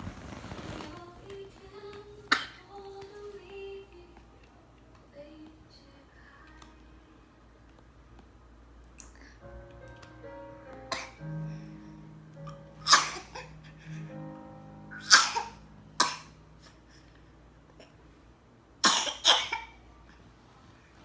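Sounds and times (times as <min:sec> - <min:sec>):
small child coughing: 0:15.1 - 0:16.3, 0:18.8 - 0:19.8.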